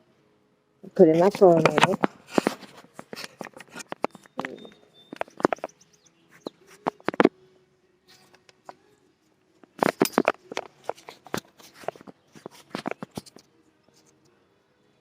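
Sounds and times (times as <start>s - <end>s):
objects handled clicking and knocking: 1.1s - 7.3s, 9.6s - 14.2s.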